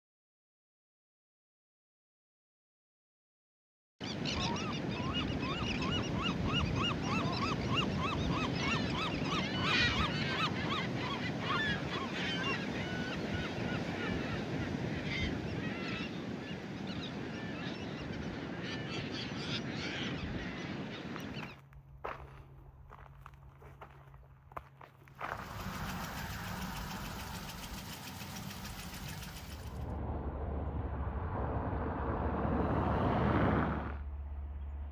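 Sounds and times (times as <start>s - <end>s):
flock of birds calling: 25.2s - 29.8s
steady rushing background: 25.2s - 30.8s.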